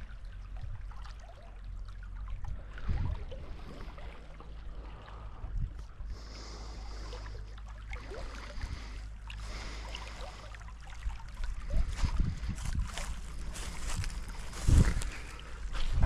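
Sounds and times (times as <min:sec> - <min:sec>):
wind rumble on microphone: 0:00.0 - 0:07.5, 0:11.0 - 0:16.0
stream water hissing: 0:06.2 - 0:15.6.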